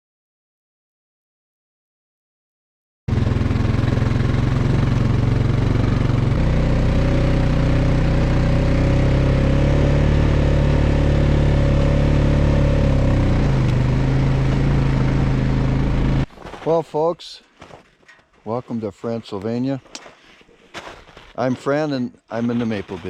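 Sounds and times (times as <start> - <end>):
engine running loudly: 3.1 - 16.3.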